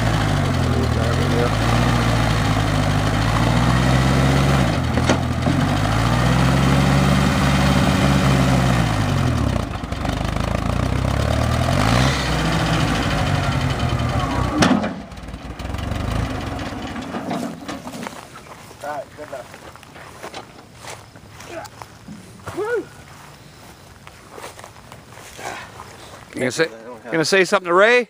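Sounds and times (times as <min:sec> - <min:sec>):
backhoe engine revving: 0:00.0 - 0:19.3.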